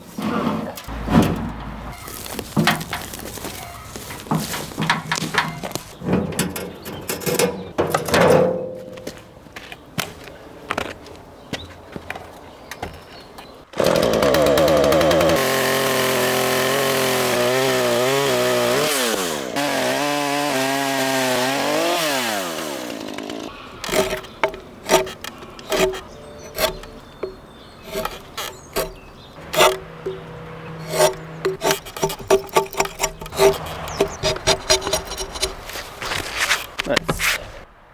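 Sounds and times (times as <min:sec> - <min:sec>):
wood knocking: 0:00.8 - 0:09.2, 0:23.8 - 0:37.7.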